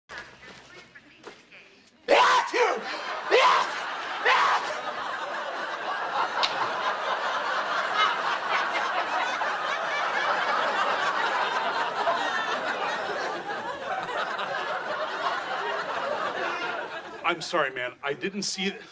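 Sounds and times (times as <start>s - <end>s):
loud vocal bursts: 2.1s - 4.8s
studio audience laughing: 2.1s - 17.6s.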